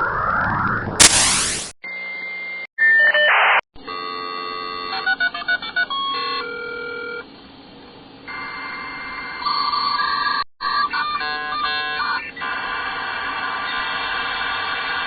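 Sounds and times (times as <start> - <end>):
phone dial tone: 6.2 - 7.2.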